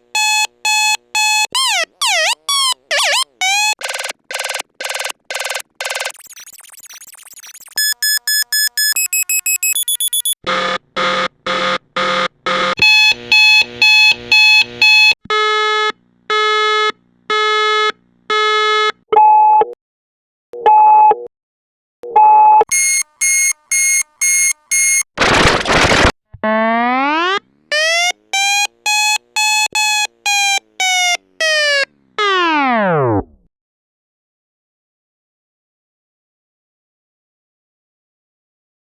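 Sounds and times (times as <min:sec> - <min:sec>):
digital alarm clock beeping: 0:00.2 - 0:10.4, 0:22.7 - 0:25.1, 0:28.4 - 0:31.0
short burst of noise: 0:22.7 - 0:26.2.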